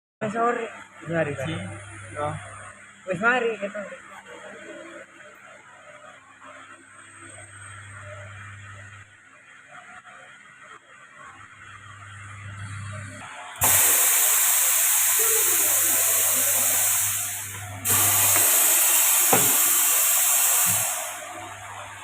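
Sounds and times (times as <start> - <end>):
compressed air hissing: 13.6 - 22.0.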